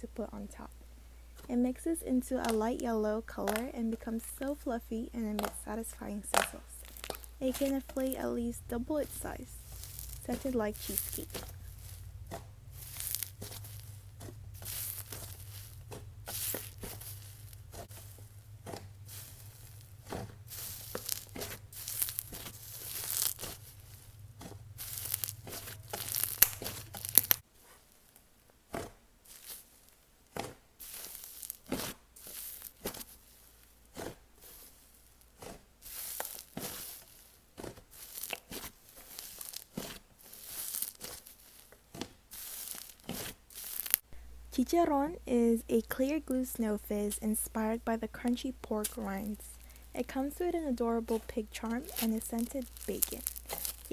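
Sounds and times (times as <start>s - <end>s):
low background hum: 0.0s - 27.4s, 42.2s - 53.9s
slime squishing and crackling: 1.4s - 28.1s, 28.7s - 44.1s, 47.0s - 53.9s.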